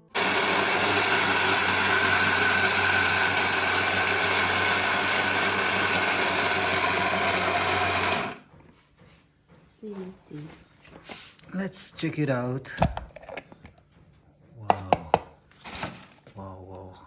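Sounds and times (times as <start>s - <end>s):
mixer grinder motor running: 0.0s - 8.5s.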